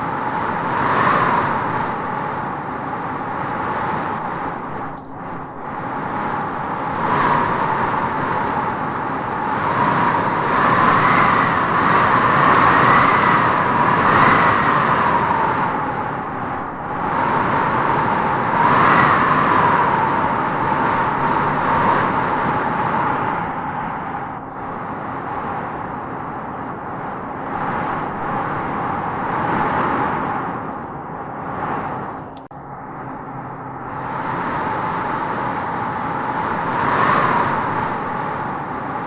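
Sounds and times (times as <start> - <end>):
wind howling in gusts: 0.0 - 39.0.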